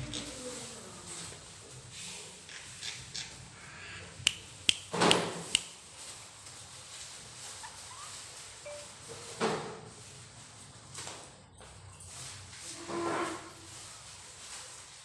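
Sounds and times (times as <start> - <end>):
parrot clicking: 4.2 - 5.8.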